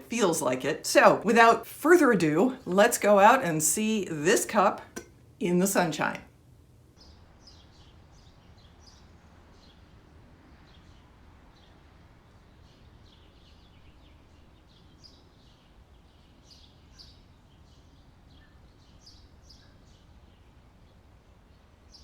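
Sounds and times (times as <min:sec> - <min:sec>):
small birds chirping: 0:07.0 - 0:22.0.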